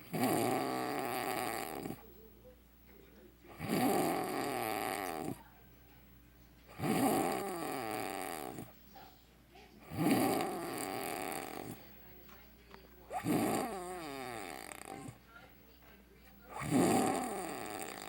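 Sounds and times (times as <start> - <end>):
man snoring: 0.0 - 2.0, 3.5 - 5.4, 6.7 - 8.7, 9.9 - 11.8, 13.2 - 15.2, 16.5 - 18.0
quiet breaths: 0.0 - 18.0.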